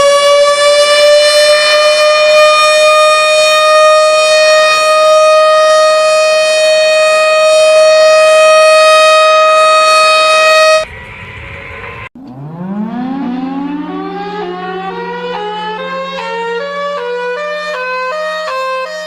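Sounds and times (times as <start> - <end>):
loud alarm siren: 0.0 - 19.0.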